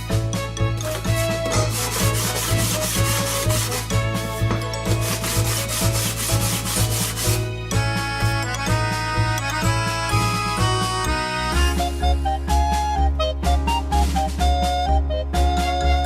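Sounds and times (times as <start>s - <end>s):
background music with bass beat: 0.0s - 16.0s
sanding wood: 0.8s - 7.5s.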